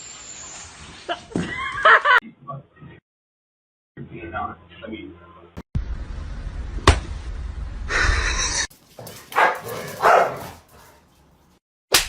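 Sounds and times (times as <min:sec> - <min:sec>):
dog barking: 0:09.0 - 0:11.0.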